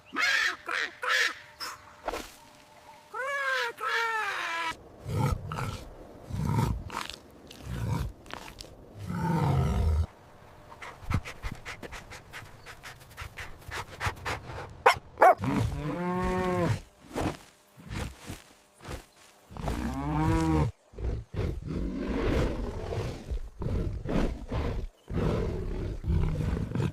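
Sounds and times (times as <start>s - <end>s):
dog barking and growling: 14.8s - 15.6s.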